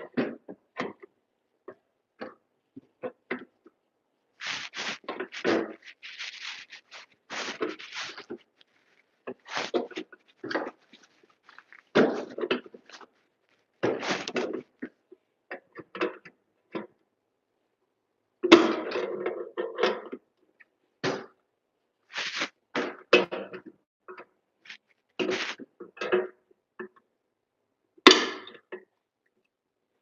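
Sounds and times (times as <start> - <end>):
hand tool scraping and knocking: 4.4 - 13.2, 13.8 - 14.6, 24.7 - 25.6.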